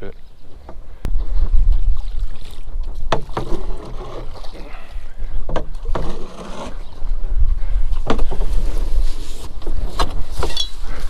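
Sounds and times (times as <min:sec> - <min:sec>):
wind buffeting microphone: 0:00.4 - 0:04.4, 0:06.7 - 0:11.0.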